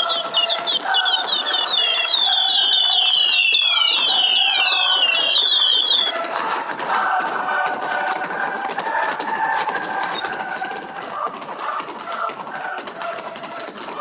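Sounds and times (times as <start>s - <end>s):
firework whistles: 0.0s - 6.2s
firework crackles: 0.8s - 7.1s.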